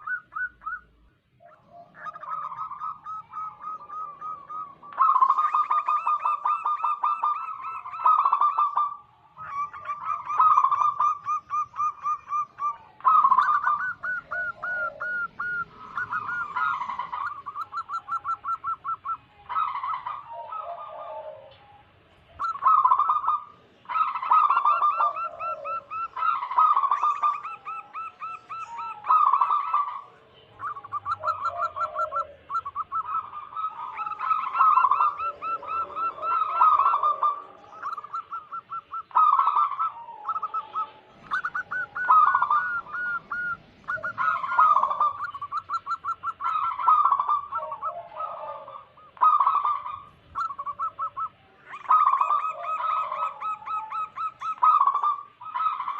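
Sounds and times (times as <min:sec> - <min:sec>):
doves cooing: 0:00.0 - 0:55.9.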